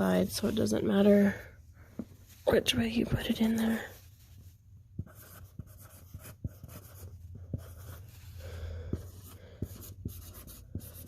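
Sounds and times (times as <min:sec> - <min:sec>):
marker scratching on plastic: 0:04.3 - 0:08.3, 0:08.9 - 0:11.0.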